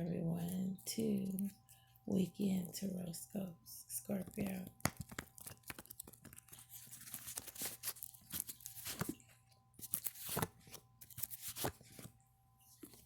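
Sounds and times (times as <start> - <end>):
cards being shuffled: 4.3 - 9.2, 9.8 - 12.1.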